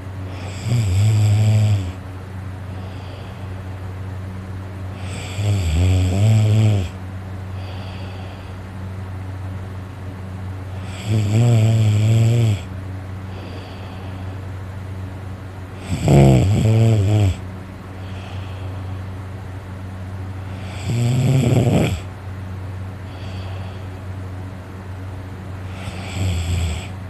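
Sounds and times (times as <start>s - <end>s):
person snoring: 0.3s - 2.0s, 5.0s - 7.0s, 10.8s - 12.7s, 15.8s - 17.4s, 20.5s - 22.1s, 25.6s - 27.0s
quiet breathing: 1.8s - 4.3s, 6.8s - 9.0s, 12.5s - 15.1s, 15.7s - 19.6s, 22.8s - 24.5s.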